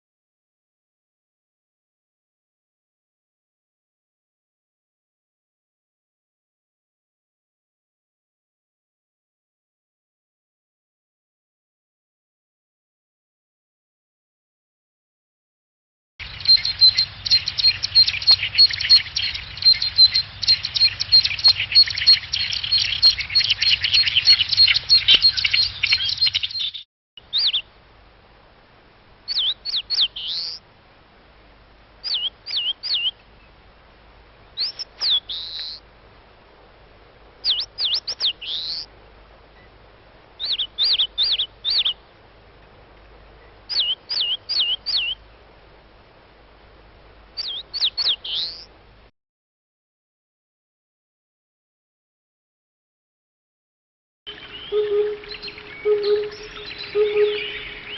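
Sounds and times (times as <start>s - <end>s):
bird rapid high chattering: 16.2s - 27.6s, 34.6s - 35.8s, 37.4s - 38.9s, 43.7s - 45.2s, 47.4s - 48.7s
bird sharp slurred whistles: 34.6s - 35.8s, 37.4s - 38.8s, 43.7s - 45.2s, 47.4s - 48.6s, 54.4s - 57.9s.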